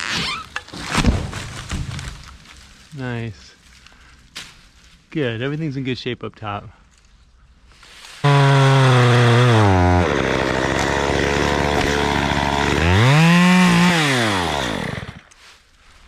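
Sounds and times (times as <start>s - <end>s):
chainsaw revving: 8.2s - 15.2s
chainsaw cutting through wood: 8.2s - 15.3s.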